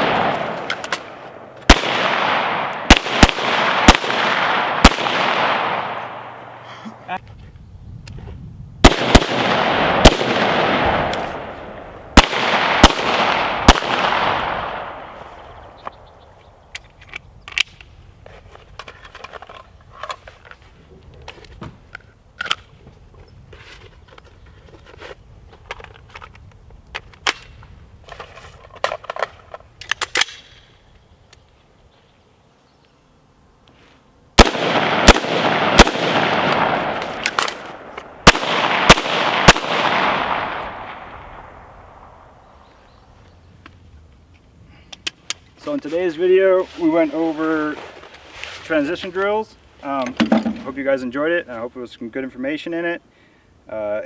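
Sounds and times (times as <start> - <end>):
gunshots with echo: 0.0 - 6.6, 8.8 - 15.2, 34.4 - 41.2
gun handling clicks and rattles: 0.3 - 1.1, 16.7 - 17.9, 18.5 - 22.8, 23.8 - 30.5, 36.5 - 38.1.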